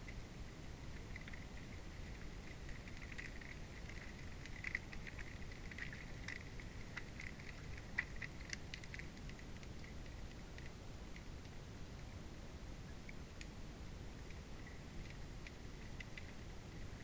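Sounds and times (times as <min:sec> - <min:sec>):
faint clicks and crackles: 0:00.8 - 0:12.2, 0:13.0 - 0:13.6, 0:14.2 - 0:17.0.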